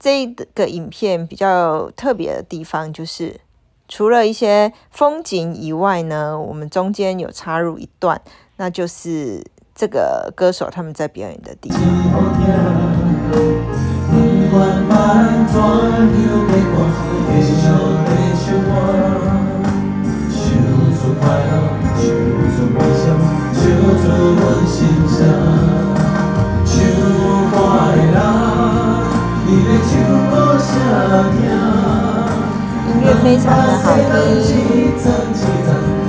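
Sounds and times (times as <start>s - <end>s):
instrumental accompaniment with bass: 11.7s - 36.0s
person singing: 11.7s - 36.0s.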